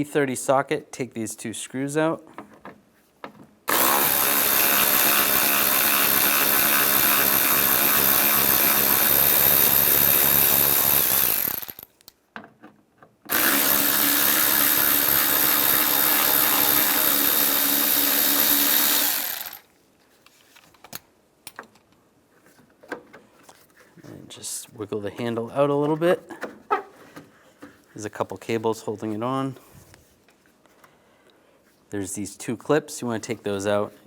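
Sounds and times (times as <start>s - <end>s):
power drill motor spinning: 3.7s - 11.9s, 13.3s - 19.7s.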